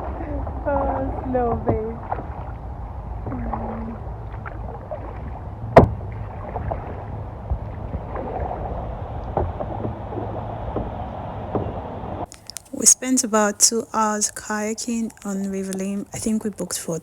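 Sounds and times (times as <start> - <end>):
kayak paddle strokes and splashes: 0.0 - 12.8
steady low rumble: 0.0 - 17.0.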